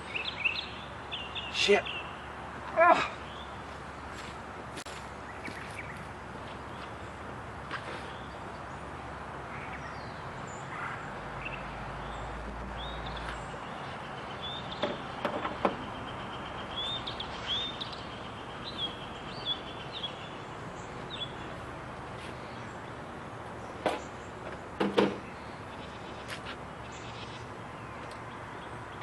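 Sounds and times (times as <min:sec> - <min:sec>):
bird chirping: 0:00.0 - 0:02.4, 0:09.5 - 0:29.0
sharp knocks: 0:14.8 - 0:15.8, 0:24.8 - 0:25.2.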